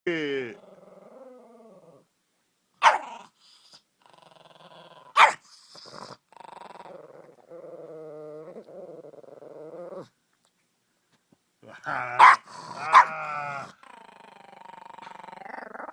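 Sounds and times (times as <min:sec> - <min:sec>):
dog growling: 0:00.5 - 0:02.1, 0:03.0 - 0:10.1, 0:11.6 - 0:15.9
dog barking: 0:02.8 - 0:03.2, 0:05.2 - 0:05.4, 0:12.2 - 0:13.2.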